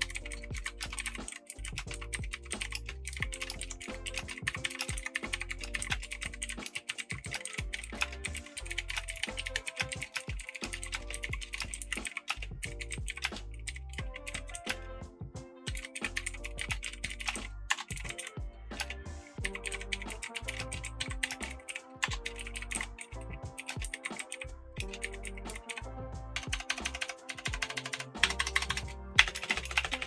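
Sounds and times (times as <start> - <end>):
clicky keyboard typing: 0.0 - 14.8, 15.7 - 23.0, 26.4 - 30.0
background music with bass: 0.0 - 30.0.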